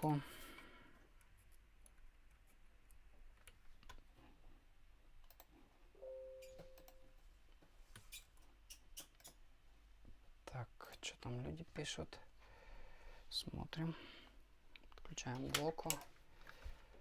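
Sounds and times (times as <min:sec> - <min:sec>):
faint small clicks: 0:05.2 - 0:05.5
brief steady tone: 0:06.0 - 0:07.0.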